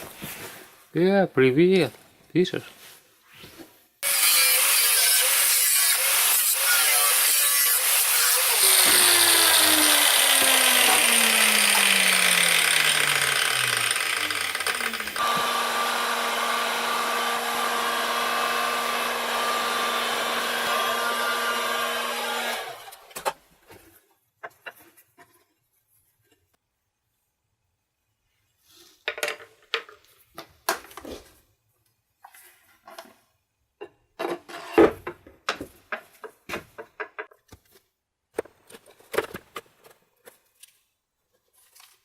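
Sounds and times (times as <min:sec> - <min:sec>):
power tool running under load: 0:07.8 - 0:23.1.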